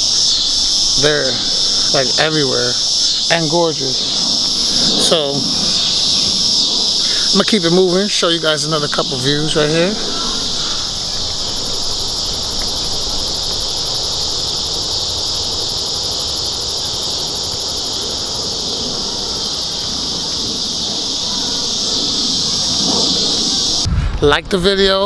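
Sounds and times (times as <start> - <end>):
insects trilling: 0.0 - 23.9
low rumble: 20.4 - 24.9.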